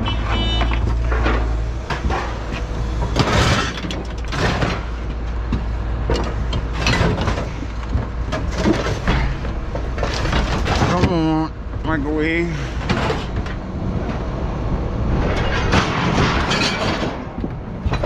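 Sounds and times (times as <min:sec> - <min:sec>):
scrap metal clanks and scrapes: 0:00.1 - 0:05.1, 0:06.1 - 0:11.2, 0:15.3 - 0:17.3.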